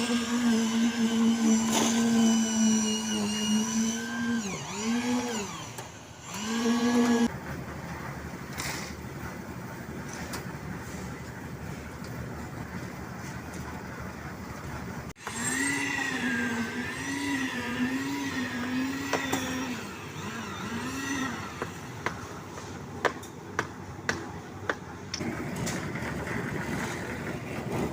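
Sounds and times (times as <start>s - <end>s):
small motor whine: 0.0s - 7.3s, 15.2s - 22.0s
concrete pour machinery: 0.0s - 24.0s, 25.2s - 27.9s.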